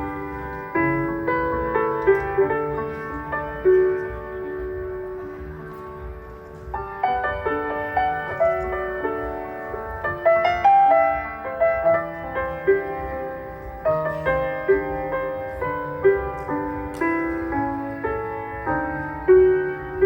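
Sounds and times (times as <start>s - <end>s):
piano playing chords and melody: 0.0s - 20.0s.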